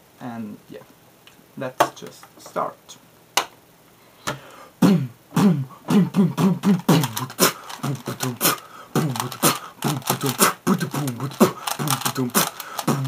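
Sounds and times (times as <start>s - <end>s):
person beatboxing: 4.8s - 13.0s.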